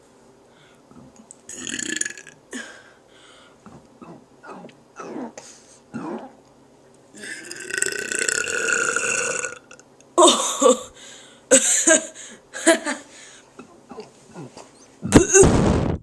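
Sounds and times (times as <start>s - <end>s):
person burping: 0.9s - 2.8s, 7.2s - 10.9s, 15.0s - 15.6s.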